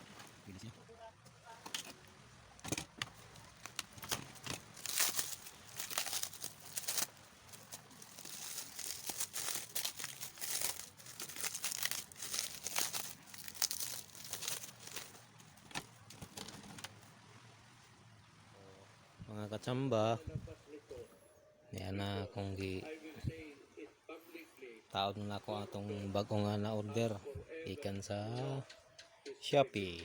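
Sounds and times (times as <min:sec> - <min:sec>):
plastic packaging crinkling and tearing: 0:03.2 - 0:16.9.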